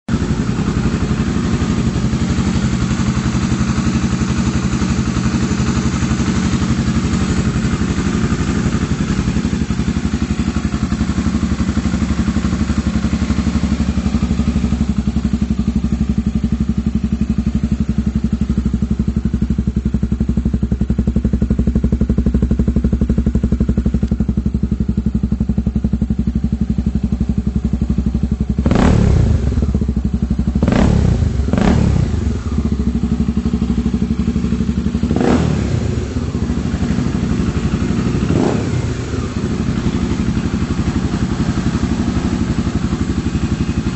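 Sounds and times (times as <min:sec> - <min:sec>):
motorcycle engine idling: 0:00.0 - 0:43.9.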